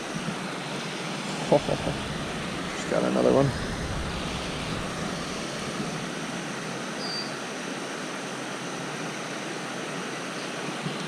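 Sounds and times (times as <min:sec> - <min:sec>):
water rushing through spillway: 0:00.0 - 0:11.0
faint high chirp: 0:07.0 - 0:07.4.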